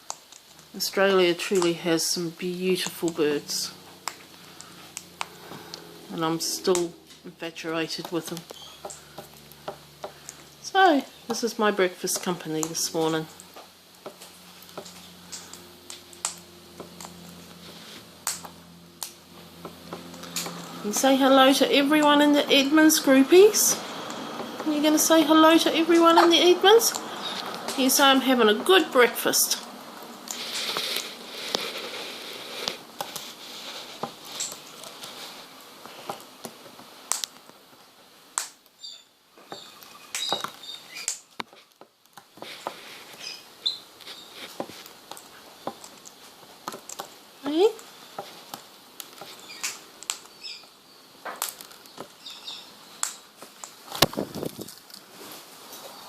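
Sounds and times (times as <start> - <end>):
faint low hum: 0.0 - 36.6
parrot beak crunching food: 29.6 - 37.5.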